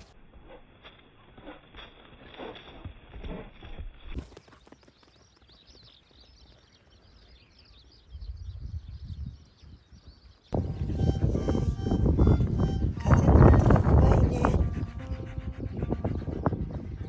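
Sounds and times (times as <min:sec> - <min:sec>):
wind gusting on microphone: 0:08.0 - 0:17.0.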